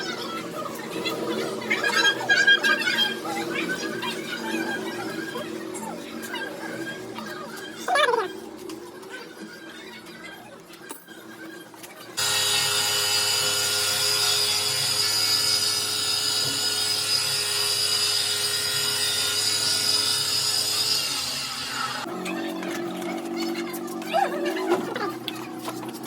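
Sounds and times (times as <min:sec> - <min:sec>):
power tool whining: 0:12.2 - 0:22.1.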